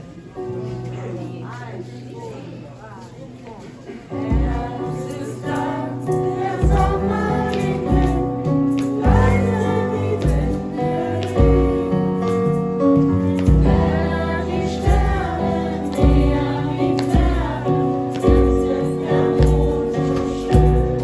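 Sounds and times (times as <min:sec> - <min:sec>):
choir singing with instruments: 0:04.1 - 0:21.0
low beat: 0:13.0 - 0:18.8.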